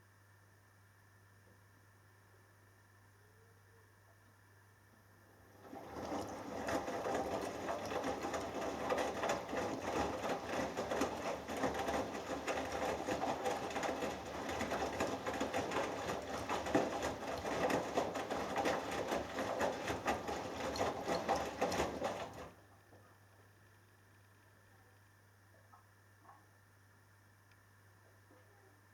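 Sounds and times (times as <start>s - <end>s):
washing machine drum turning: 5.6s - 22.5s
water sloshing: 5.6s - 22.5s.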